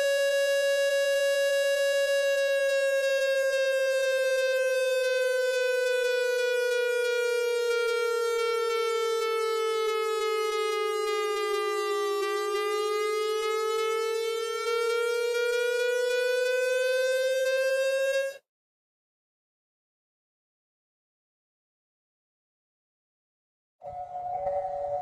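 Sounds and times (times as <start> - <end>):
slowed-down alarm siren: 0.0 - 18.5, 23.8 - 25.0.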